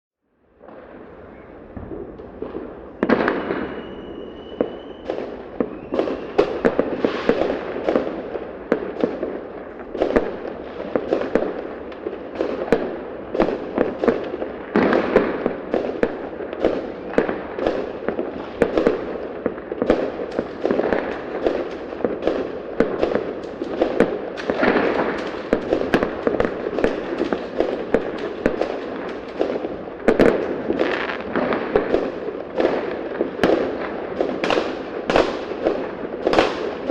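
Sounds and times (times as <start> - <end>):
fireworks banging and crackling: 0.6 - 36.9
firework whistle: 3.0 - 7.5.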